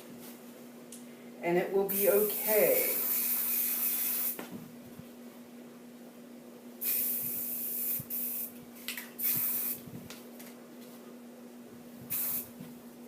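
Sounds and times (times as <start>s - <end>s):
spray-paint can hissing: 2.2s - 4.4s, 6.8s - 8.5s, 9.2s - 9.8s, 12.1s - 12.5s.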